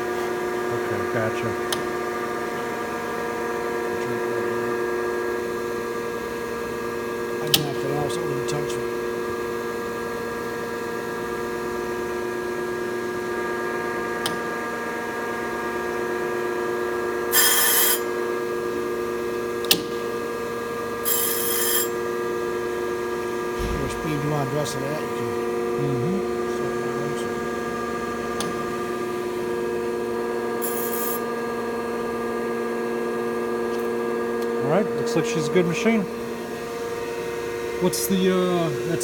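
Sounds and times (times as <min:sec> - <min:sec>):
surface grinder motor humming: 0:21.0 - 0:22.0.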